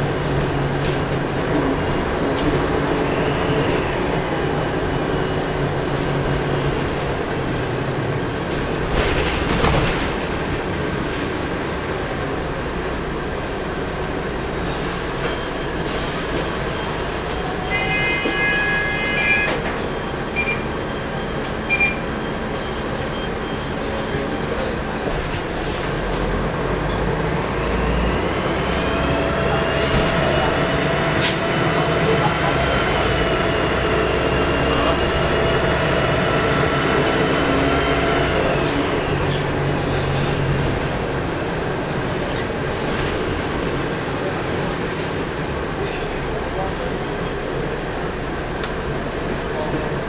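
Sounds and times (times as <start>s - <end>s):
bus diesel engine running: 0.0s - 17.8s, 18.6s - 50.0s
road noise: 0.0s - 50.0s.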